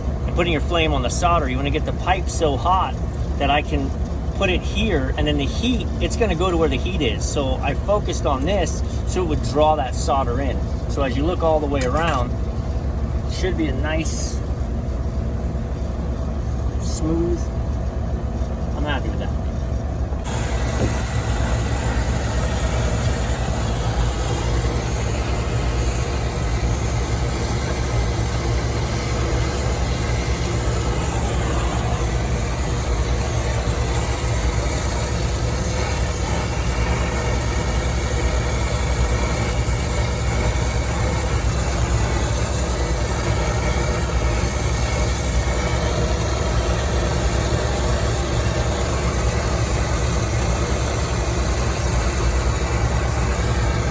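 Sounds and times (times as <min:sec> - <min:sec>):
steady low rumble: 0:00.0 - 0:53.9
torch flame rushing: 0:20.2 - 0:53.9.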